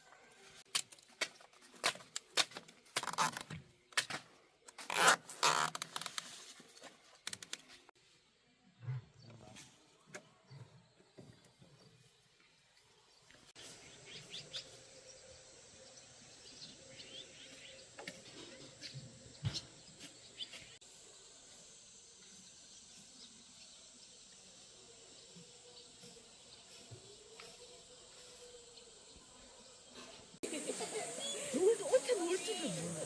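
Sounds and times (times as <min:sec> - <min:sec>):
steady hiss: 0:30.1 - 0:33.0.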